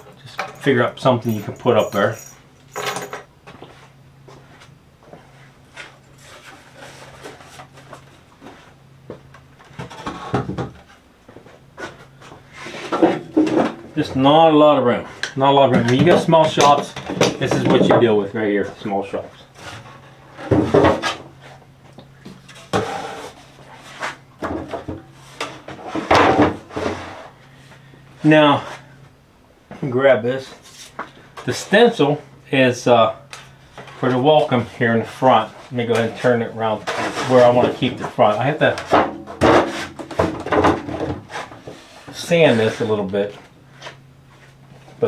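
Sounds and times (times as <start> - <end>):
wood and hardware clattering: 0.0 - 3.8, 12.8 - 14.1, 15.7 - 18.2
steady low hum: 0.0 - 45.0.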